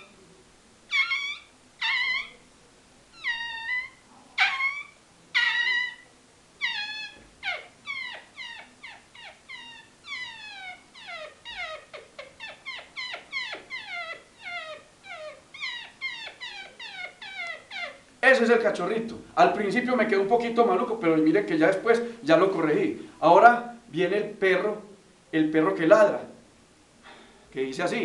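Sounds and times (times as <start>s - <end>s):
man imitating puppy yelps: 0.9s - 2.4s, 3.1s - 18.8s.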